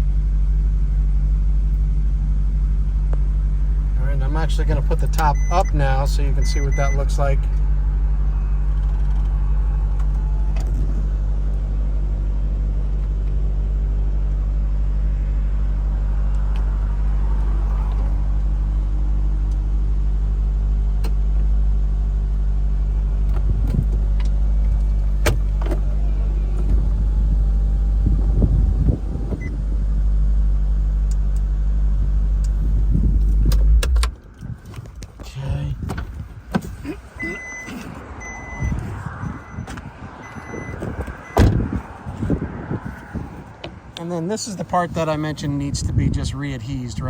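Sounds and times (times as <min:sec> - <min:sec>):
car engine idling: 0:00.0 - 0:46.8.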